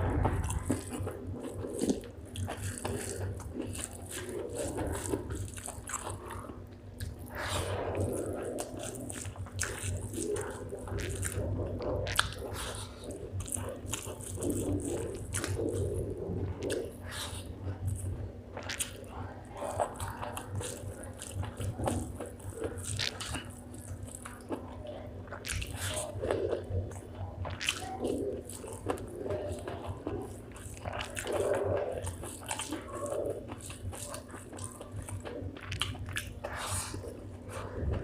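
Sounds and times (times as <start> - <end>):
food crunching: 0.0 - 38.0
wet chewing sounds: 0.0 - 38.0.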